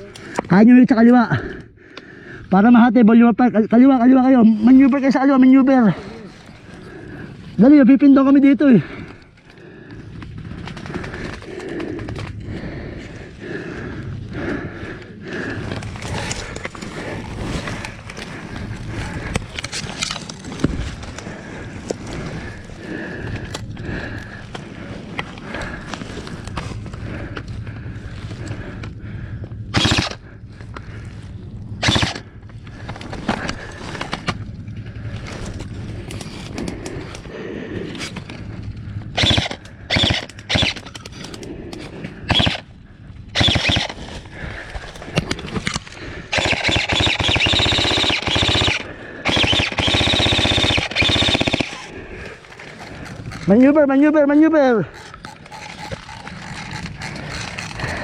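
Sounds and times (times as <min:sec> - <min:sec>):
airsoft guns firing bursts: 0:29.8 - 0:30.2, 0:31.8 - 0:32.2, 0:39.2 - 0:40.9, 0:42.3 - 0:42.6, 0:43.4 - 0:44.2, 0:46.3 - 0:52.0.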